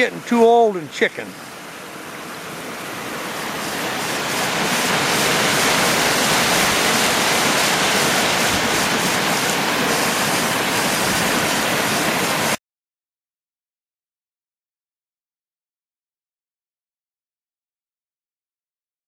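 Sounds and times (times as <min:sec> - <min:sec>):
whitewater rushing: 0:00.0 - 0:12.6.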